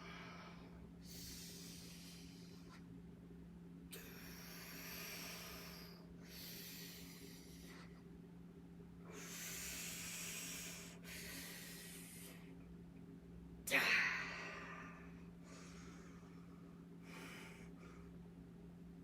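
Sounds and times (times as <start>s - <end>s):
person breathing hard: 0.0s - 2.8s, 3.9s - 8.0s, 9.0s - 12.5s, 13.7s - 18.2s
steady low hum: 0.0s - 19.0s.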